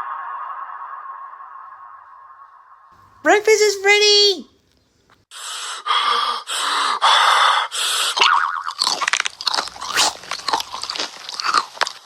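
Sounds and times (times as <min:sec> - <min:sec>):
cereal crunching and chewing: 0:08.2 - 0:12.0.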